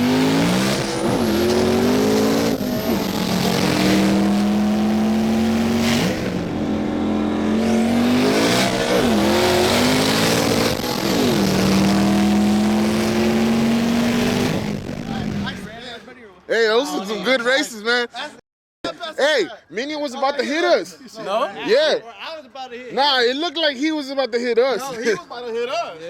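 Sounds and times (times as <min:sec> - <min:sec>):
v eight engine at full throttle: 0:00.0 - 0:15.8.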